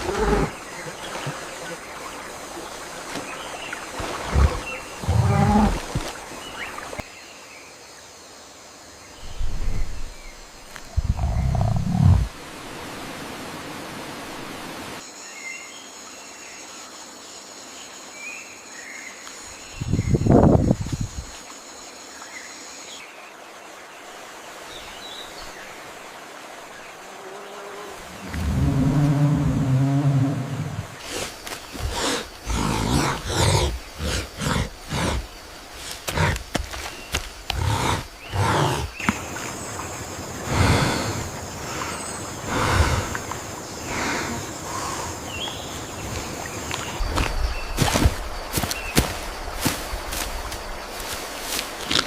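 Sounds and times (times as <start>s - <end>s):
stream rushing: 0.0s - 7.1s, 9.2s - 15.1s, 21.3s - 52.0s
animal grunt: 4.4s - 5.9s, 11.0s - 12.3s, 31.8s - 35.3s, 37.5s - 39.0s
high insect buzz: 26.8s - 52.0s
low animal moaning call: 28.2s - 31.0s.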